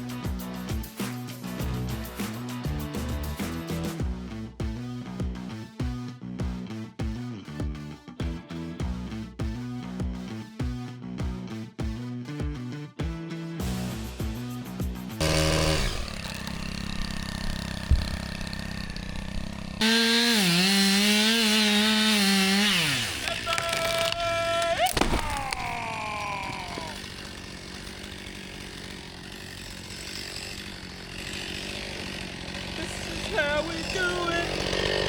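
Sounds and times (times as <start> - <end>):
chainsaw running: 0.0 - 6.6, 13.6 - 35.0.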